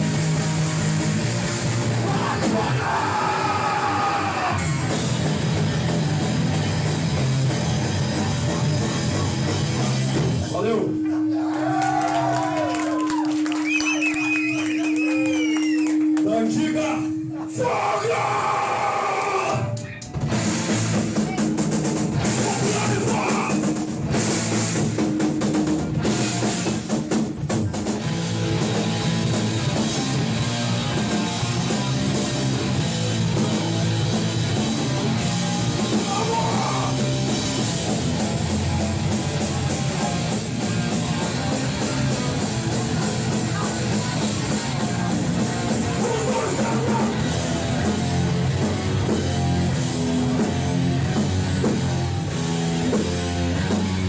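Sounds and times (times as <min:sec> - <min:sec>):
punk band playing live: 0:00.0 - 0:54.0.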